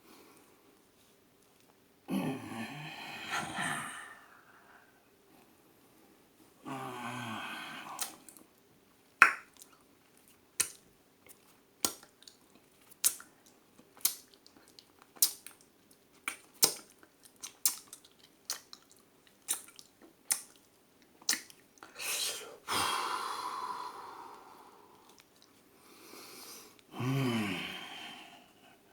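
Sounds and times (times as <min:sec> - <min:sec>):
tongue clicks: 0:08.0 - 0:08.4, 0:14.0 - 0:20.6, 0:21.2 - 0:21.6.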